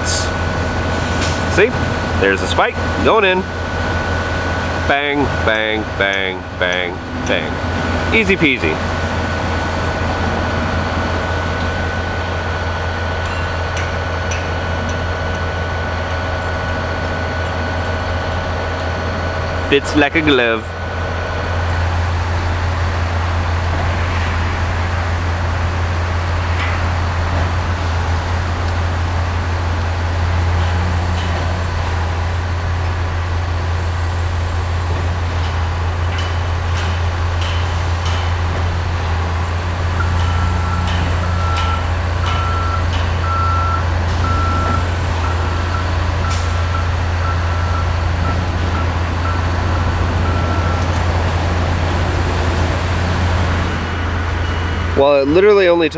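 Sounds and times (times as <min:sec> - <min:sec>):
heavy machinery engine drone: 0:00.0 - 0:55.9
reversing alarm beeping: 0:39.7 - 0:54.8.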